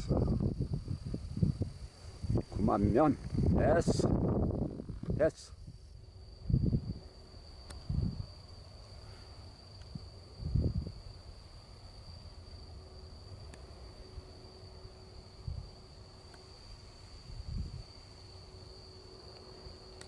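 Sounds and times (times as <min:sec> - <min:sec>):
wind buffeting microphone: 0:00.0 - 0:08.4, 0:09.9 - 0:11.2, 0:17.2 - 0:18.0
crickets trilling: 0:00.0 - 0:20.0.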